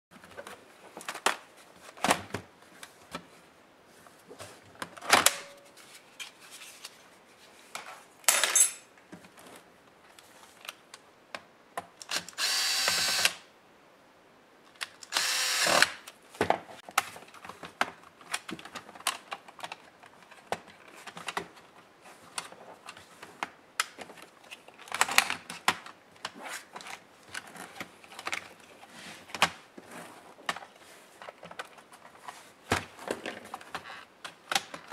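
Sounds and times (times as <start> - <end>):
electric screwdriver whining: 12.1 - 13.4, 15.1 - 15.9
plastic laptop case handled: 16.4 - 34.9.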